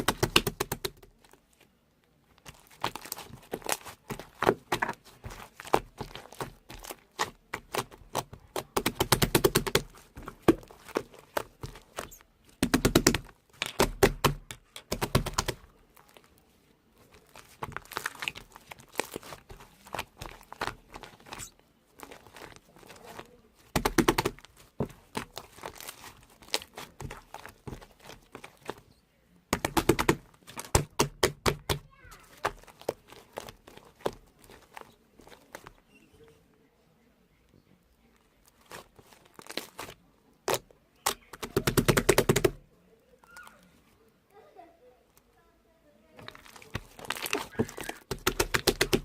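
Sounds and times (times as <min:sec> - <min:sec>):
handling clicks and crackling: 0:46.2 - 0:49.0.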